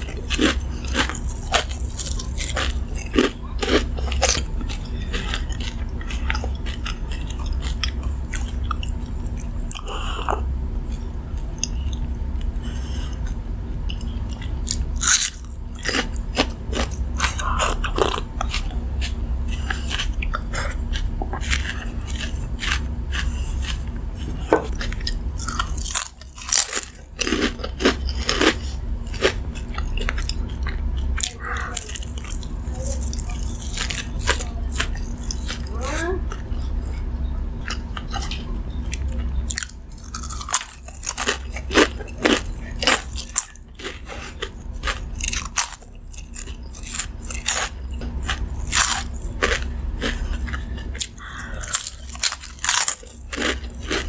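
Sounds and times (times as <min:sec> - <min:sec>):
chewing and crunching food: 0:00.0 - 0:54.0
steady low hum: 0:00.0 - 0:54.0.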